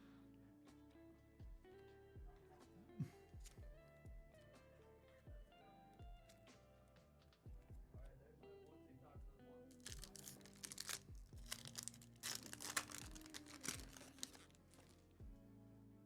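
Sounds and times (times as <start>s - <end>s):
quiet background music: 0.0s - 16.0s
foil wrapper tearing and crinkling: 9.8s - 15.1s.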